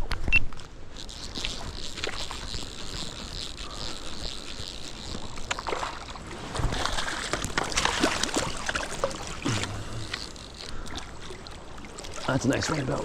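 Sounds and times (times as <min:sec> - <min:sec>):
water splashing and sloshing: 0:00.5 - 0:13.0.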